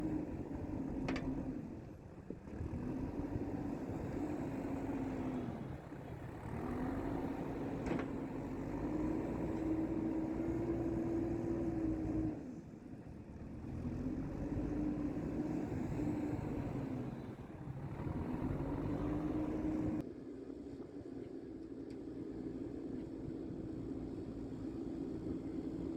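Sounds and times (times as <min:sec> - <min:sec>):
diesel engine working under load: 0:00.0 - 0:20.0.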